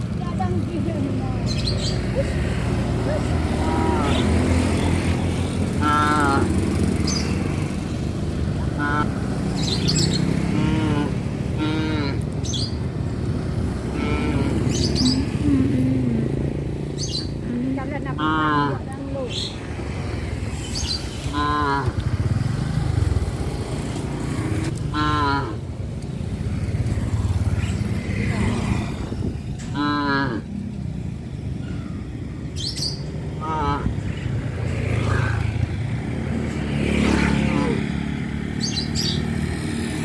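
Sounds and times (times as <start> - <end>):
low rumble of vehicle engines: 0.0 - 40.0
cattle mooing: 3.6 - 4.4, 5.8 - 6.6, 10.4 - 12.2, 13.9 - 14.8, 21.3 - 22.0, 24.9 - 25.6, 29.7 - 30.6.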